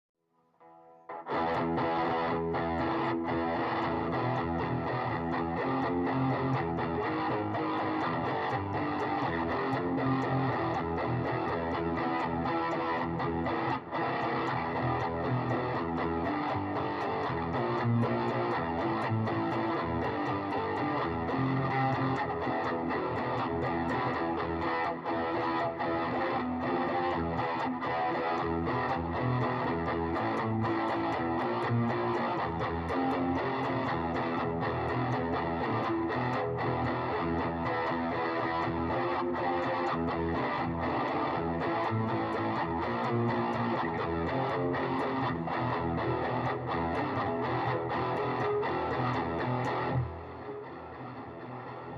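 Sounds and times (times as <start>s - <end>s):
overdriven electric guitar: 0.3s - 51.9s.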